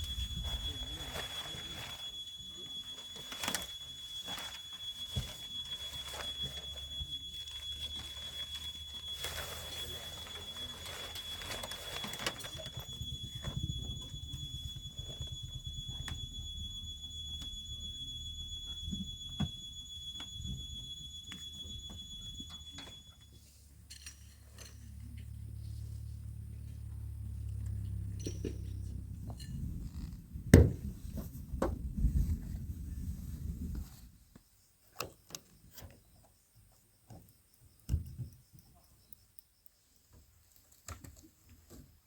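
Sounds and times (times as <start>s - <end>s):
high-pitched tone: 0.0s - 23.4s
low steady hum: 23.8s - 33.8s.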